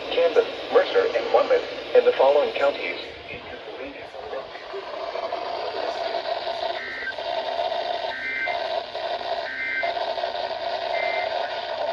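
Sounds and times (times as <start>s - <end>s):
radio static: 0.0s - 11.9s
warbling digital tone bursts: 6.6s - 7.2s, 8.0s - 10.1s, 10.8s - 11.7s.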